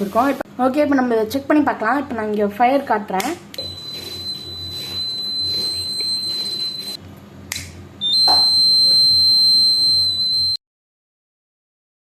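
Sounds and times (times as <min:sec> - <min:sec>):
fire alarm buzzer tone: 0:03.6 - 0:07.0, 0:08.0 - 0:10.6.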